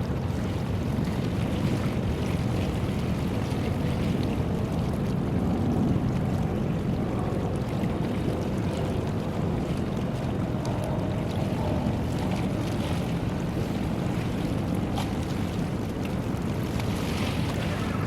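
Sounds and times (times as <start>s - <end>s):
wind noise on microphone: 0.0s - 18.0s
boat engine rumbling: 4.4s - 18.0s.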